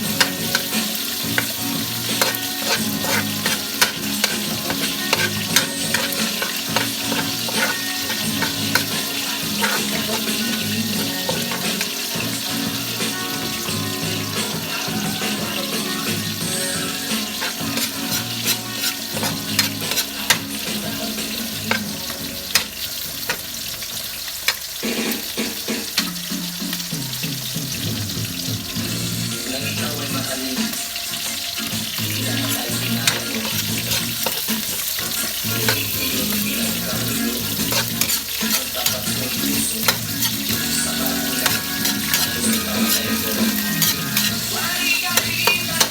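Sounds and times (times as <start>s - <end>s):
utensil clicking against pan: 0.0s - 12.1s, 17.2s - 24.8s, 32.4s - 45.9s
food sizzling in a pan: 0.0s - 45.9s.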